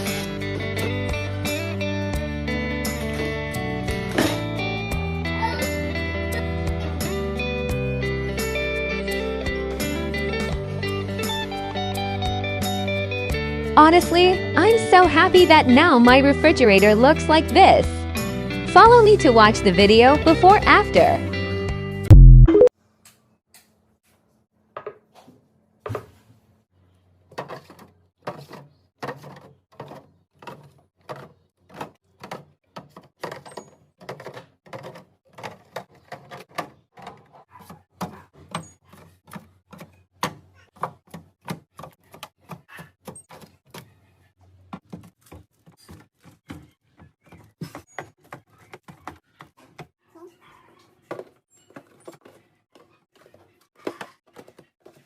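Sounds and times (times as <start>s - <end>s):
containers clacking and knocking: 27.3s - 43.9s, 51.0s - 55.0s.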